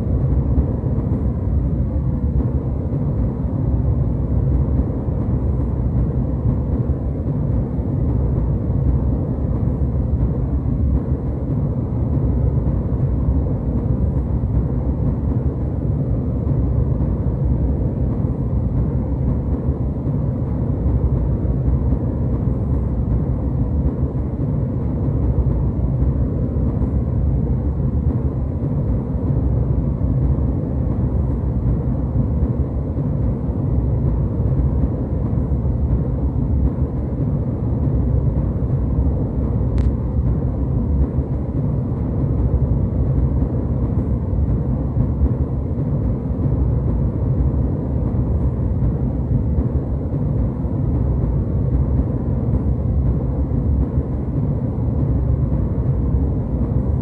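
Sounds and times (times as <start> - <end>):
airplane cabin rumble: 0.0 - 57.0
faint click: 39.8 - 40.0.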